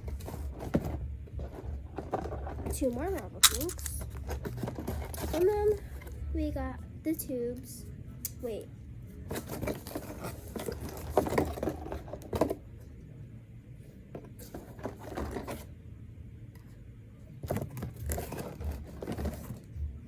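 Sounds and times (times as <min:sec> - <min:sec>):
plastic toys crinkling and scraping: 0:00.0 - 0:06.2, 0:09.3 - 0:12.7, 0:14.2 - 0:15.7, 0:17.4 - 0:19.9.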